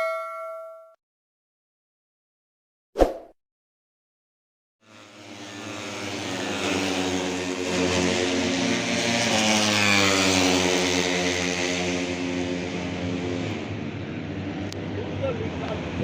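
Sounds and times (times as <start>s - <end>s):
race motorcycle passing: 4.8s - 16.0s.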